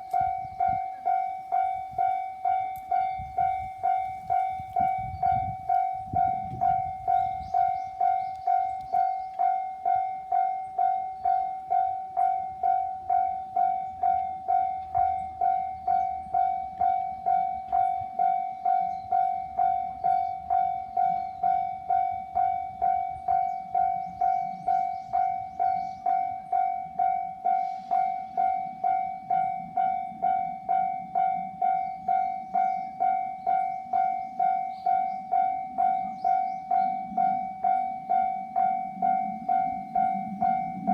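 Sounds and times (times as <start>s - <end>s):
level-crossing warning bell: 0.0s - 40.9s.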